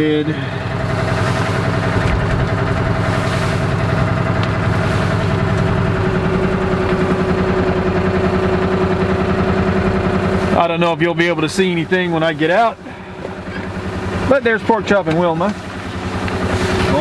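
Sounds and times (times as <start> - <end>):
utility vehicle engine running: 0.0 - 17.0.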